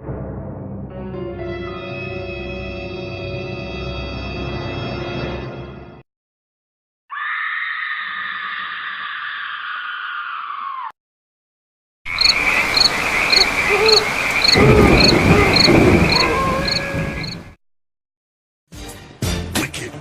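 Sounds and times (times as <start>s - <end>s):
crickets chirping: 12.1s - 17.5s
frogs croaking: 12.1s - 17.5s
high-pitched cry: 13.4s - 17.4s.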